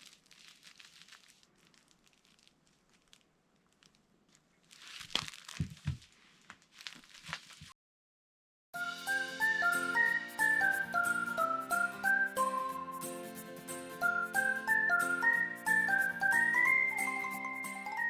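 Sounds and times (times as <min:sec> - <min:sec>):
cat toy rustling and crinkling: 0:00.0 - 0:07.7.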